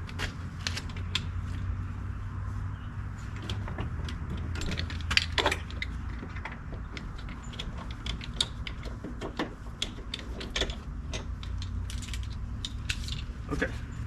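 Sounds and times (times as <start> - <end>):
metal clicks of hand tools: 3.4 - 13.3.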